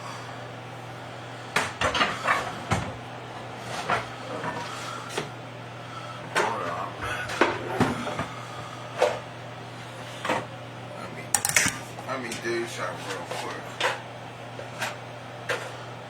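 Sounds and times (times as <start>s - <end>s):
dishes and cupboards clunking: 11.4s - 11.9s.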